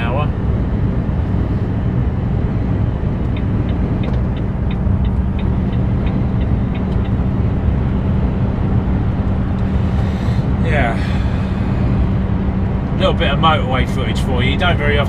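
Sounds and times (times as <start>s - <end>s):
diesel engine drone: 0.0s - 15.0s
road rumble: 0.0s - 15.0s.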